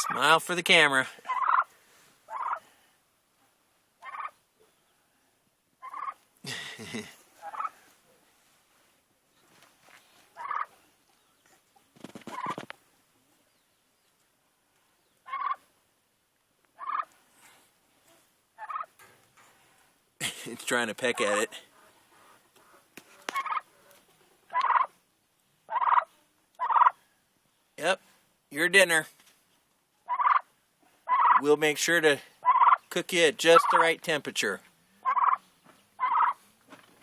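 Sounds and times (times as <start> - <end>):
turkey calling: 0.0 - 0.3, 1.2 - 2.7, 4.0 - 4.4, 5.8 - 6.2, 7.4 - 7.8, 10.4 - 10.8, 15.2 - 15.7, 16.8 - 17.2, 18.6 - 18.9, 21.1 - 25.0, 25.7 - 27.0, 30.0 - 30.5, 31.1 - 31.5, 32.4 - 33.8, 35.0 - 35.4, 36.0 - 36.4.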